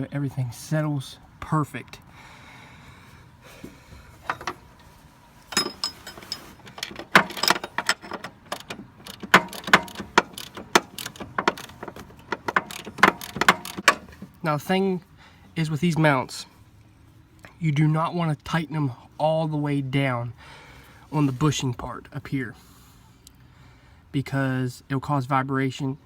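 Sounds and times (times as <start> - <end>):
metal hand tools clicking: 5.6 - 14.1.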